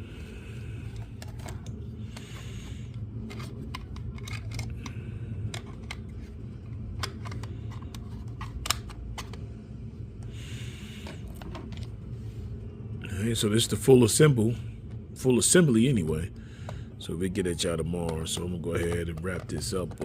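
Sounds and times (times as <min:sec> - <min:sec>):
steady low hum: 0:00.0 - 0:20.0
plastic parts clicking: 0:03.2 - 0:04.9, 0:05.5 - 0:09.4.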